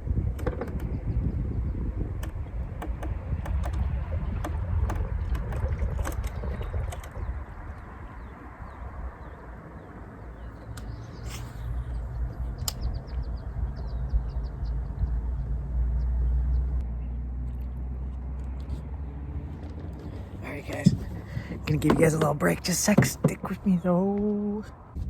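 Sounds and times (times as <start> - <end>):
small birds chirping: 0.0 - 17.6, 20.0 - 25.0
low rumble: 0.0 - 22.2
sharp clicks: 2.2 - 7.2, 12.6 - 13.2.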